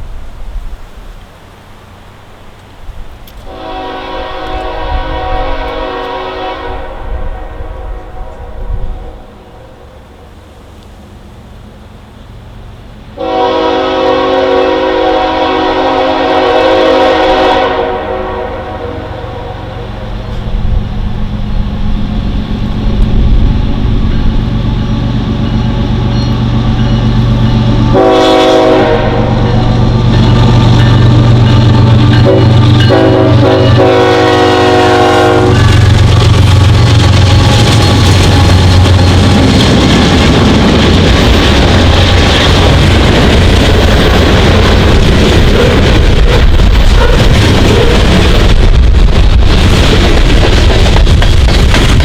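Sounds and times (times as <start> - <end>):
locomotive engine rumble: 0.0 - 52.0
train air horn blasts: 3.4 - 10.3, 13.2 - 20.7, 27.3 - 39.3.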